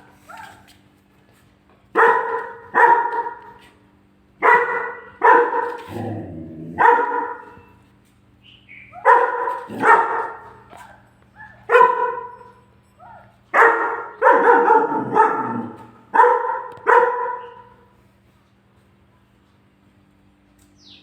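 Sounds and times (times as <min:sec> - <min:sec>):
puppy barking angrily: 0:00.0 - 0:00.7, 0:01.9 - 0:03.7, 0:04.4 - 0:07.7, 0:08.9 - 0:17.9.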